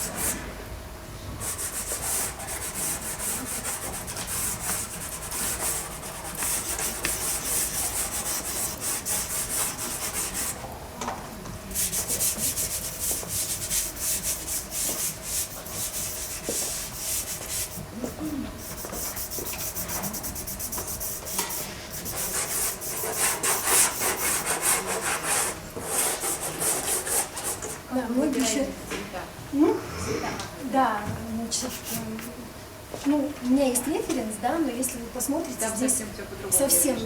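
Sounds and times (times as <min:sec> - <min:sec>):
pastel sticks scratching paper: 0:01.5 - 0:10.6, 0:18.6 - 0:27.8.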